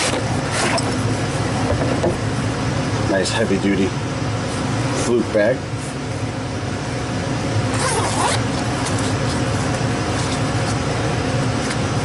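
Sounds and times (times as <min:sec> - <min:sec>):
steady low hum: 0:00.0 - 0:12.0
bag zipper being pulled open: 0:07.7 - 0:09.2.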